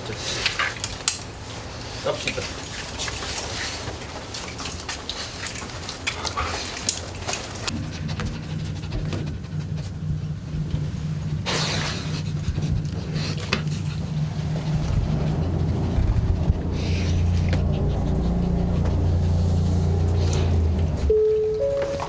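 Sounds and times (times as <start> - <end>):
dog panting: 4.9 - 21.1
steady low hum: 7.7 - 22.0.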